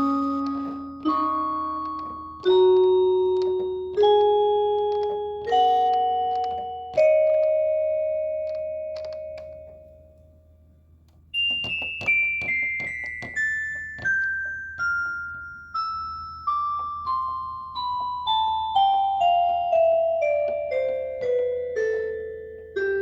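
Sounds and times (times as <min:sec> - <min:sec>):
electronic keyboard piano notes: 0:00.0 - 0:10.4, 0:11.3 - 0:23.0.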